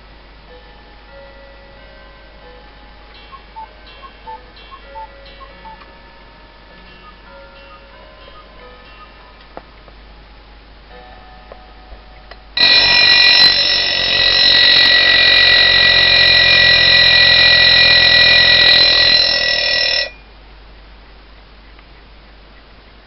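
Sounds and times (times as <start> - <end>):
alarm clock bell ringing: 12.6 - 20.2.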